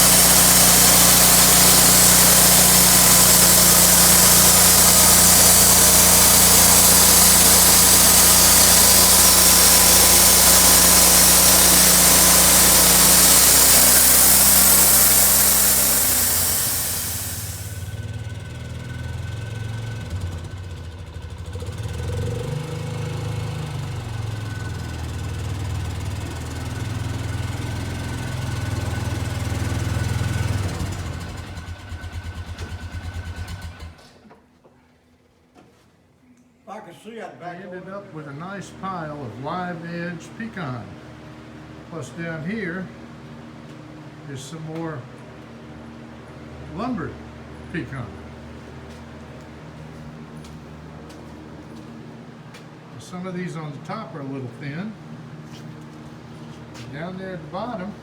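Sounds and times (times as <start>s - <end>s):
saw blade cutting log: 0.0s - 17.9s
sawmill engine running: 0.0s - 20.4s, 23.7s - 33.9s.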